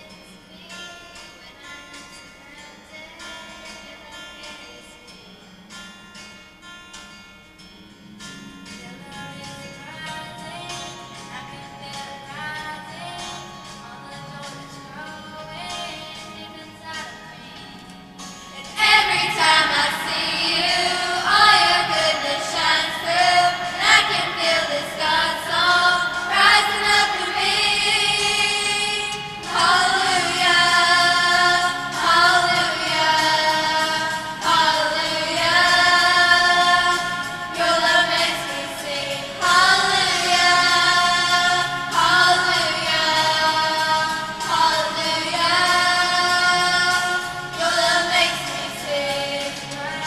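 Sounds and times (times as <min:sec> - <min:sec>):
children's choir singing: 0:00.0 - 0:05.2, 0:18.6 - 0:50.0.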